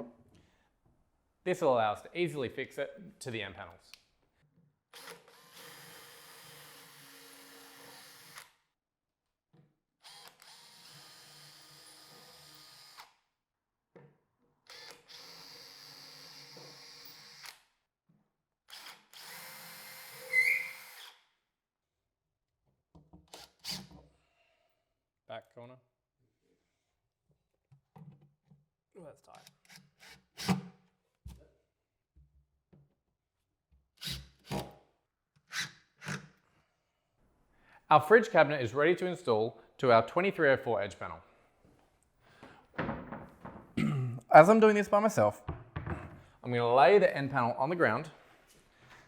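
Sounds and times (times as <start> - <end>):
power drill drilling: 5.0 - 8.5, 10.0 - 13.1, 14.7 - 17.5, 18.7 - 21.2
sharp squeal: 20.2 - 20.9.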